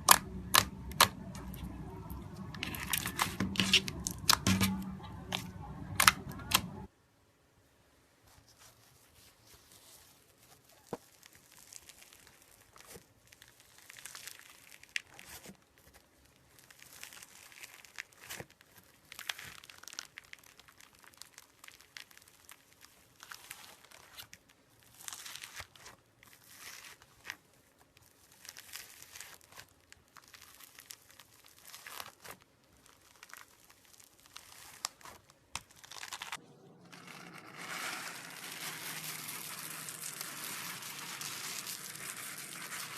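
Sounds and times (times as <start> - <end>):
hands squeezing slime: 28.0 - 42.9.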